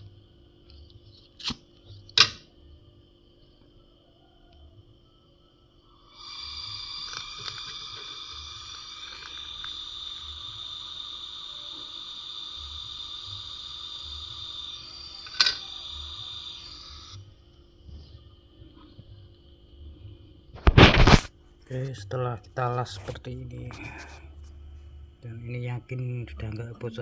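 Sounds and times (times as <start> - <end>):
gas torch flame hissing: 5.9 - 24.4.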